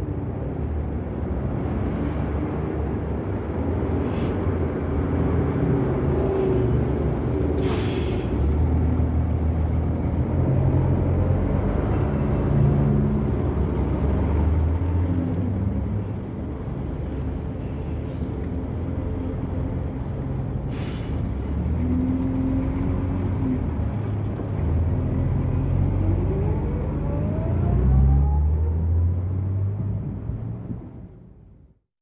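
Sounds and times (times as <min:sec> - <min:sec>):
bus engine rumbling: 0:00.0 - 0:31.7
hiss burst: 0:06.3 - 0:08.8, 0:20.7 - 0:21.4.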